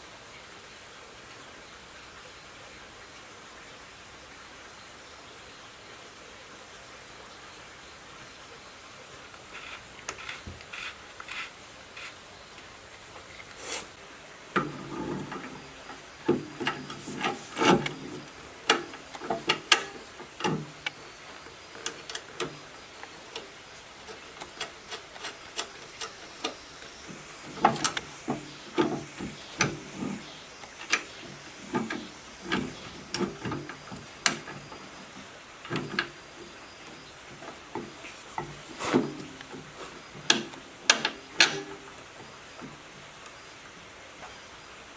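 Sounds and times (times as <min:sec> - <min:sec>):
rubbing and scraping: 0:09.5 - 0:12.2, 0:13.2 - 0:14.0, 0:14.6 - 0:20.9, 0:23.3 - 0:40.6
handling clicks and knocks: 0:14.6 - 0:42.9.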